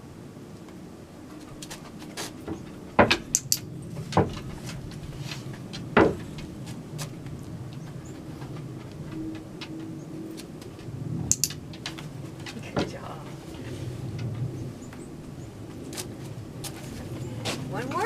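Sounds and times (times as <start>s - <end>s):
board banging: 4.0s - 6.5s.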